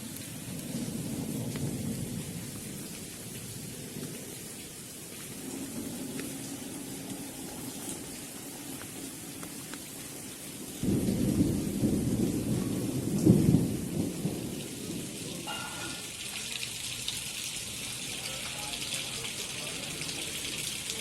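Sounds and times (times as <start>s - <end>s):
raindrops pattering: 0.0s - 21.0s
steady rain: 0.0s - 21.0s
thunder rolling: 0.2s - 8.7s, 10.6s - 16.2s.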